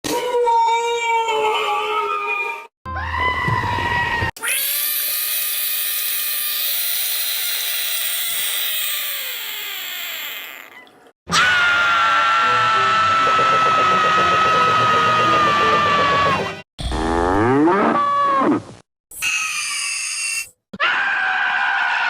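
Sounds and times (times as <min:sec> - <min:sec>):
cartoon character screaming: 0:04.1 - 0:10.6, 0:11.3 - 0:16.5, 0:19.2 - 0:22.0.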